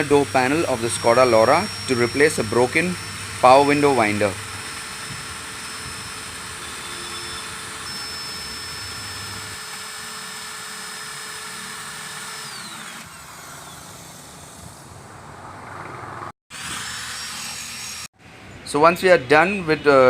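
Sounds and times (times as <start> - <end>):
electric drill whining: 0.0 - 14.8.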